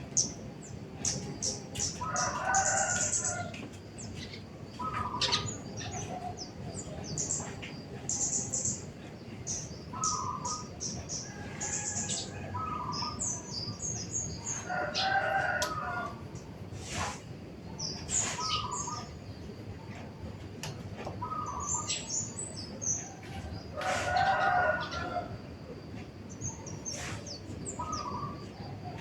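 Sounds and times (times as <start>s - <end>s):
loud long bird calls: 0.0s - 20.0s, 21.0s - 29.0s
birds chirping: 0.0s - 29.0s.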